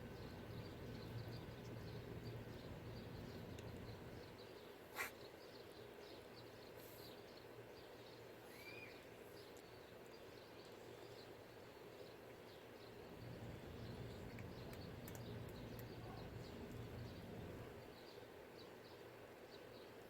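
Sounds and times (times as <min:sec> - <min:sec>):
small birds chirping: 0:00.0 - 0:20.0
low hum: 0:13.1 - 0:17.9.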